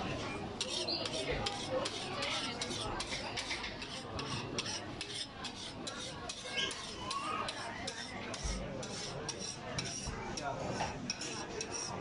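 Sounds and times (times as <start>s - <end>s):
metal spatula scraping a griddle: 0.6s - 12.0s.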